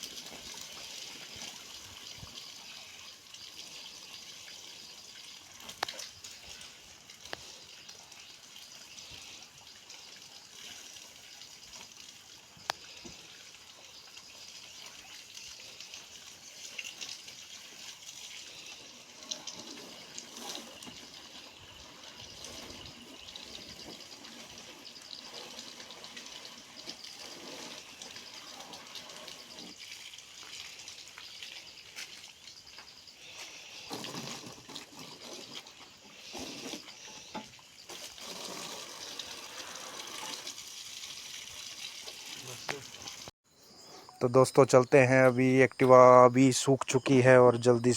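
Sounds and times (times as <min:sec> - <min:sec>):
water running and splashing: 0:00.0 - 0:43.4.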